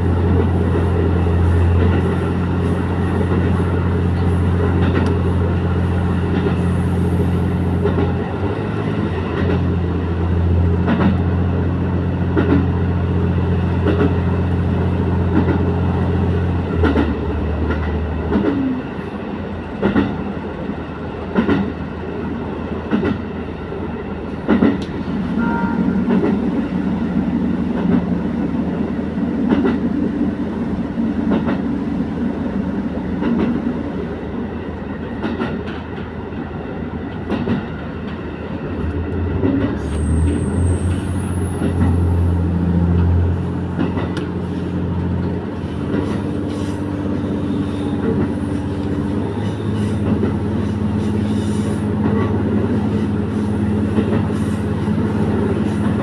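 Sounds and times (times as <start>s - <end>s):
wheels clicking over rail joints: 42.9s - 53.1s.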